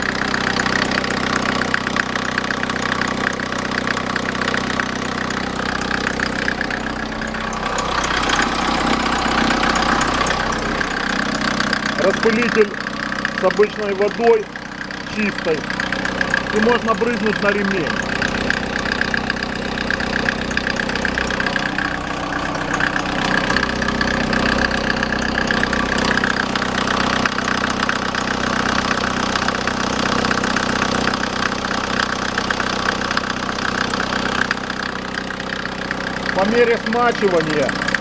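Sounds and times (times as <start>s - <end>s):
engine idling: 0.0s - 38.0s
water spraying: 14.6s - 26.4s.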